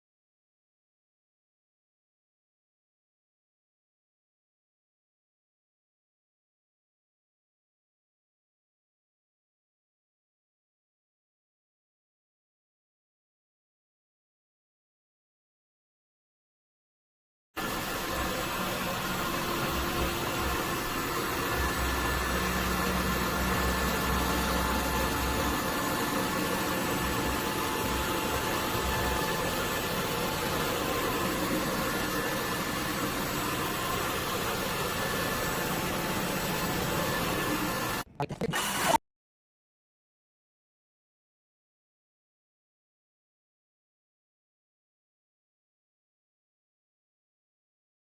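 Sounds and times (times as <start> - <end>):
vacuum cleaner running: 17.6 - 39.0.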